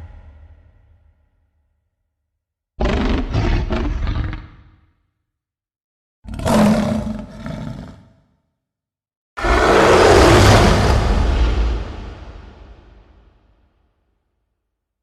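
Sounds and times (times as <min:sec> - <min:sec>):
monster growling roars: 0:09.4 - 0:13.2.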